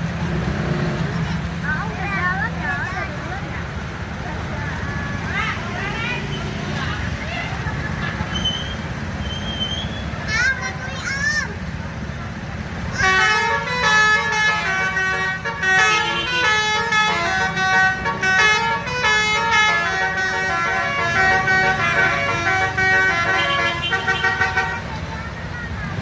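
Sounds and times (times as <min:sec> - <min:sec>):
musical bus horn playing tune: 0:13.0 - 0:25.1.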